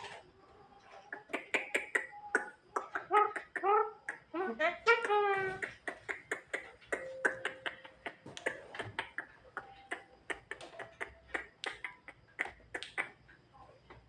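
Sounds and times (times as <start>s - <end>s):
bird making sharp clicks: 5.6s - 13.2s.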